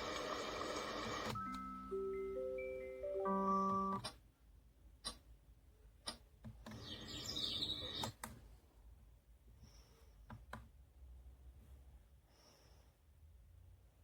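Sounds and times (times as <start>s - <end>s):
recorded birdsong: 6.6s - 8.2s.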